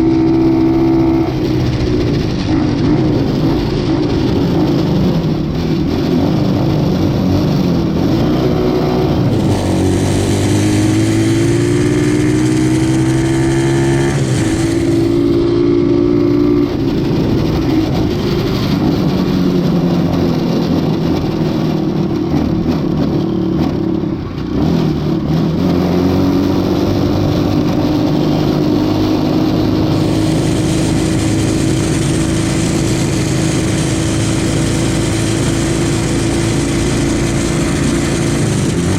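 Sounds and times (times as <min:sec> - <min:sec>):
small motorbike engine revving: 0:08.0 - 0:17.3, 0:24.6 - 0:38.9.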